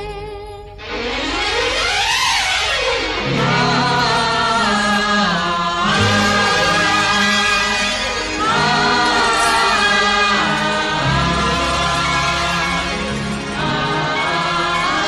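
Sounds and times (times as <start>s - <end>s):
orchestral accompaniment with bass: 0.0s - 15.0s
chorus singing wordless phrases: 3.2s - 15.0s.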